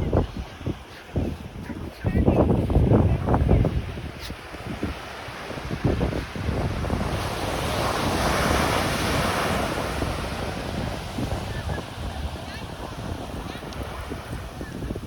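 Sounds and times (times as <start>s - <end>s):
wind buffeting microphone: 0.0s - 15.0s
ocean wave washing in: 4.1s - 14.8s.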